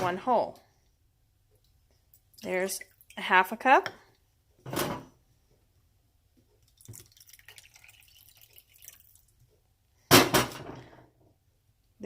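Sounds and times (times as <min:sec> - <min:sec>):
water trickling into a bowl: 0:02.1 - 0:03.3, 0:06.6 - 0:09.5.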